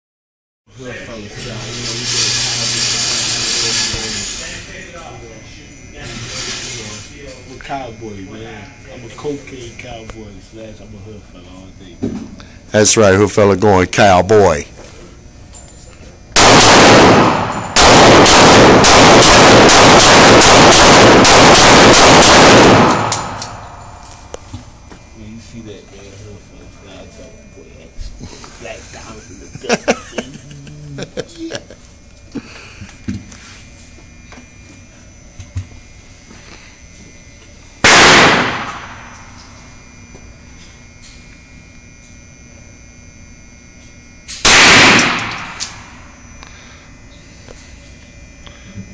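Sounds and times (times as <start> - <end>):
gunshots: 16.4 - 23.7, 37.8 - 39.1, 44.4 - 45.8.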